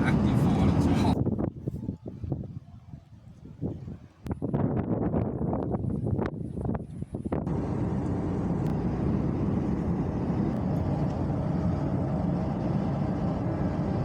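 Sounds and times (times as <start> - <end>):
vehicle driving road noise: 0.0 - 1.2, 7.4 - 14.0.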